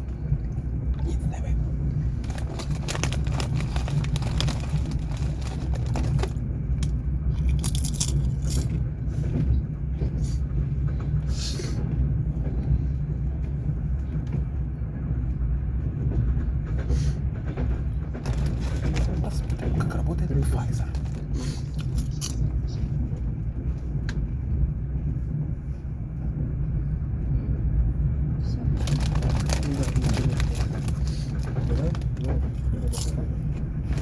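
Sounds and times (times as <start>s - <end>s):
train wheels rumbling: 0.0s - 34.0s
clicks and rustles: 2.1s - 8.8s, 17.5s - 22.9s, 28.8s - 34.0s.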